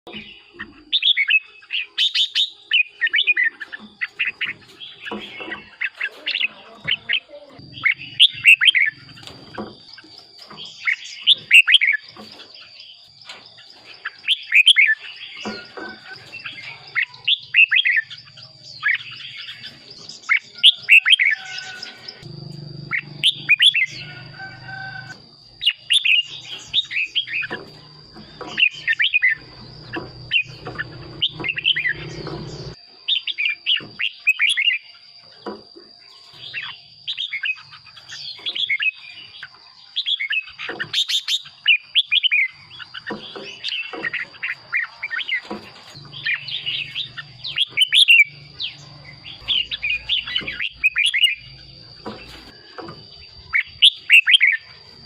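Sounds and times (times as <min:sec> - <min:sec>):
bird singing whistled notes: 0:07.0 - 0:09.3, 0:14.1 - 0:34.9, 0:36.4 - 0:52.8, 0:53.4 - 0:54.7
low hum: 0:22.0 - 0:25.6.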